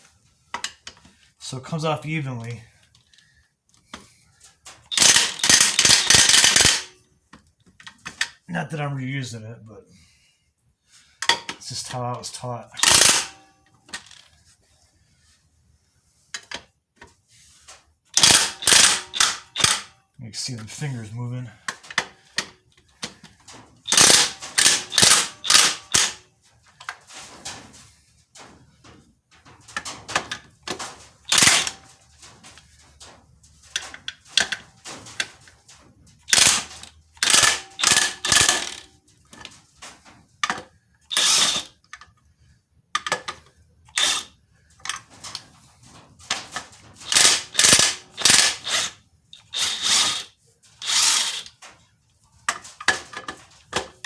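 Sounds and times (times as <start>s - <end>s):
ratchet wrench clicking: 4.9s - 6.9s, 12.8s - 13.3s, 18.2s - 19.9s, 23.9s - 26.2s, 31.3s - 31.8s, 36.3s - 38.8s, 41.1s - 41.7s, 44.0s - 44.3s, 47.1s - 51.6s.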